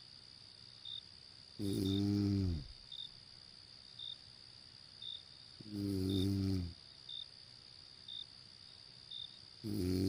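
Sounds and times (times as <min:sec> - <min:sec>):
crickets chirping: 0:00.0 - 0:10.0
high insect trill: 0:00.0 - 0:10.0
person snoring: 0:01.6 - 0:02.7, 0:05.6 - 0:06.8, 0:09.6 - 0:10.0.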